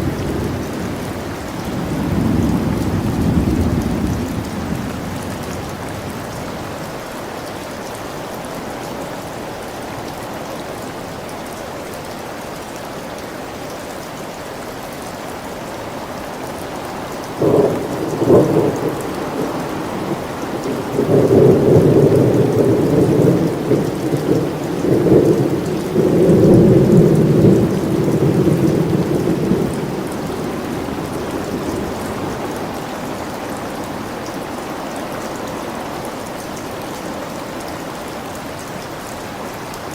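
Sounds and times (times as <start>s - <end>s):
rain falling: 0.0s - 39.9s
thunder crack and rumble: 17.4s - 33.3s.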